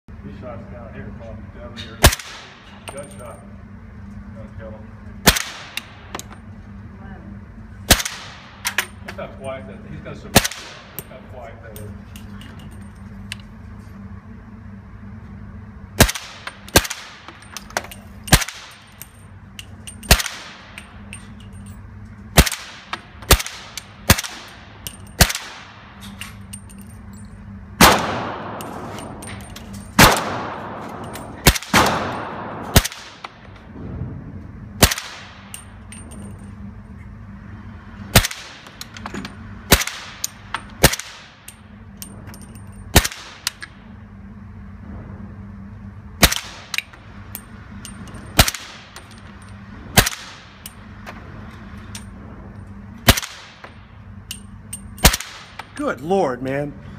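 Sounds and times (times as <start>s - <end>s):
steady low hum: 0.0s - 56.9s
suppressed gunshots: 2.0s - 2.6s, 5.2s - 6.2s, 7.8s - 8.8s, 10.3s - 11.0s, 16.0s - 17.4s, 20.0s - 20.8s, 22.3s - 24.6s, 25.2s - 26.0s, 27.8s - 29.2s, 30.0s - 34.2s, 34.8s - 35.5s, 38.1s - 38.8s, 39.7s - 41.4s, 42.9s - 43.6s, 46.2s - 46.8s, 48.4s - 49.0s, 53.0s - 53.8s, 55.0s - 55.8s.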